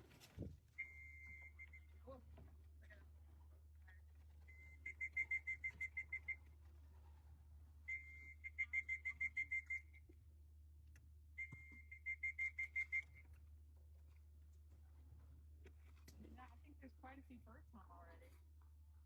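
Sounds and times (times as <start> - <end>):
high whistle: 0.8 - 2.1, 4.5 - 6.5, 7.9 - 10.0, 11.4 - 13.4.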